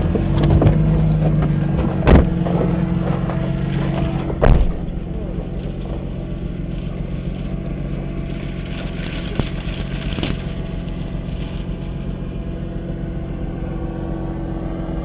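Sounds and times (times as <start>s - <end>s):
car engine running: 0.0s - 15.0s
sharp knocks: 0.4s - 5.4s.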